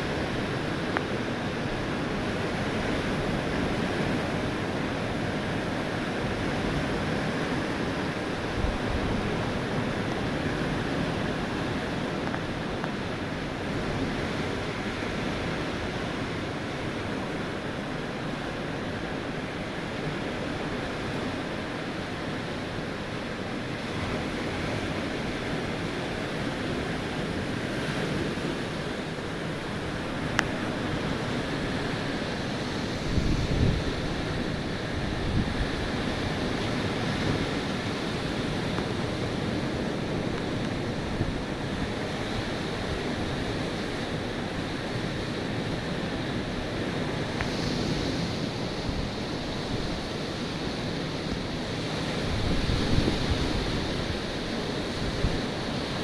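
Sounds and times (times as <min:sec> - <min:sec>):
ocean surf on beach: 0:00.0 - 0:56.0
wind buffeting microphone: 0:47.2 - 0:56.0.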